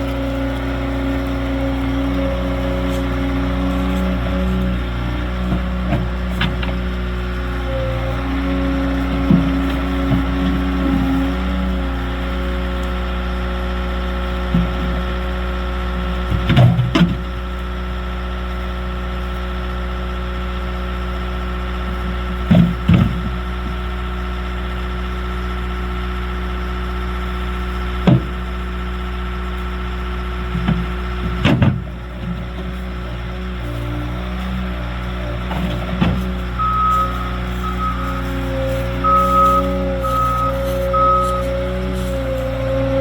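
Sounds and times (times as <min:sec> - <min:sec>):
rocks clunking and knocking: 0:00.0 - 0:11.8, 0:14.4 - 0:15.2, 0:16.0 - 0:17.4, 0:22.4 - 0:23.8, 0:28.0 - 0:28.6, 0:30.4 - 0:43.0
diesel engine running: 0:00.0 - 0:43.0.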